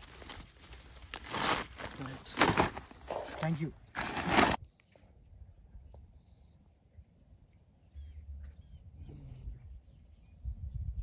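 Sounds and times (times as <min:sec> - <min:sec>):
faint bird chirps: 0:04.6 - 0:11.0
wind rumble on microphone: 0:08.3 - 0:11.0.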